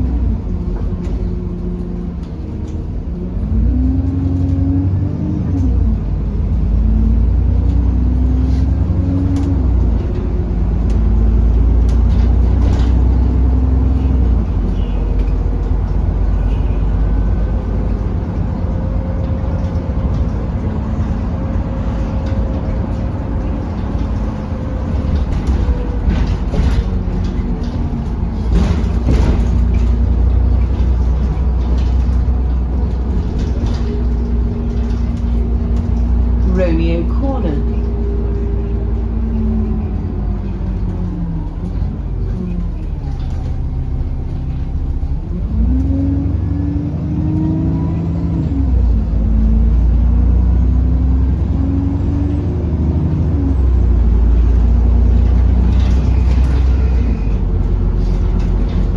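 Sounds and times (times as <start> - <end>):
bus engine and road rumble: 0.0 - 58.9
rattles and knocks: 8.8 - 16.4, 17.5 - 46.2, 53.6 - 58.9.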